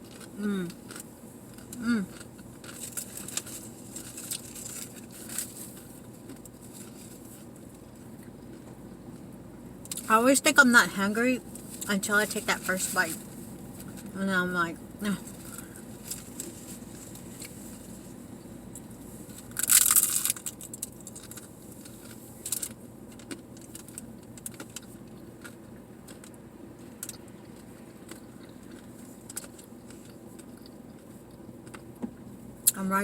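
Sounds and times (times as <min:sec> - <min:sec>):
air conditioner hum: 0:00.0 - 0:33.0
car engine idling hum: 0:00.0 - 0:33.0
chewing: 0:27.0 - 0:31.8.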